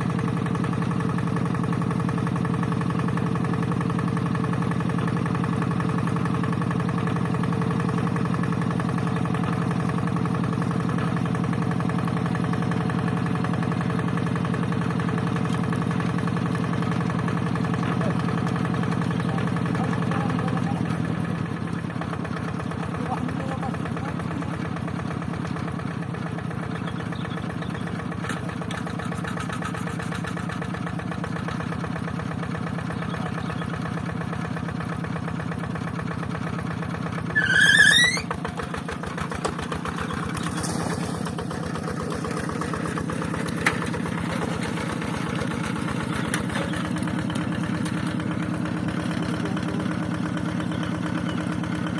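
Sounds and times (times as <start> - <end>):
tractor engine running: 0.0 - 51.9
high squeal of rising chirps: 37.3 - 38.3.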